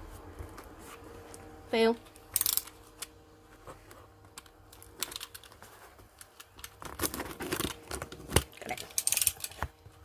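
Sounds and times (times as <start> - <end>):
cardboard rustling: 6.8 - 8.8.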